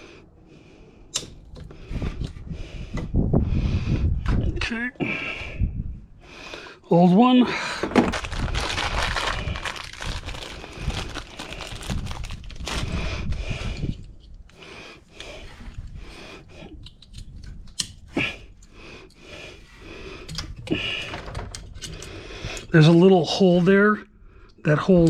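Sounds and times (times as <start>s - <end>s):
hands rustling small parts: 7.8s - 19.6s.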